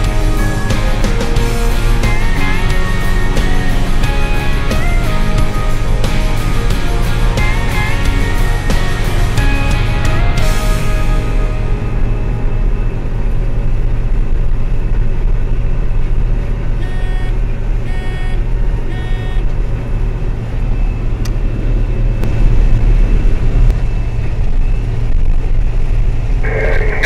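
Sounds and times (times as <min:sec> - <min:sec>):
harvester engine rumbling: 0:00.0 - 0:27.0
short electronic beeps: 0:16.8 - 0:19.5.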